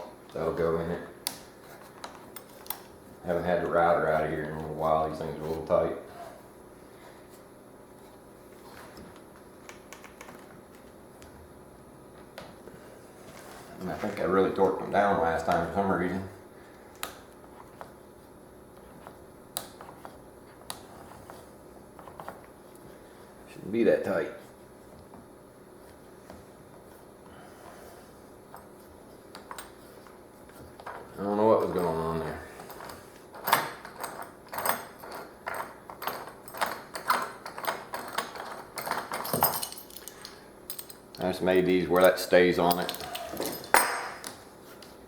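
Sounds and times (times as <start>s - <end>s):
fasteners clicking and knocking: 32.8s - 41.2s.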